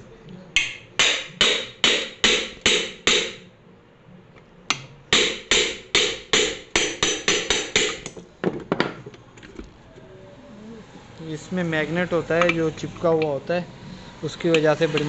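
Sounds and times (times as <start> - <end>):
hammer striking metal housing: 0.6 - 3.4.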